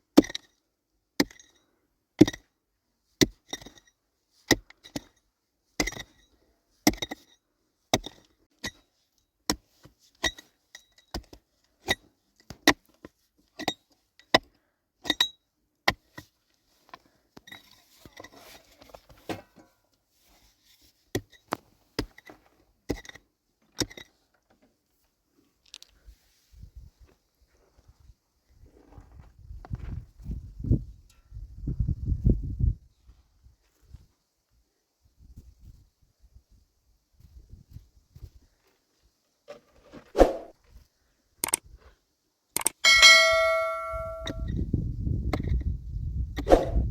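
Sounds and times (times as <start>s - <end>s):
hand tool striking hard surface: 42.6s - 44.5s.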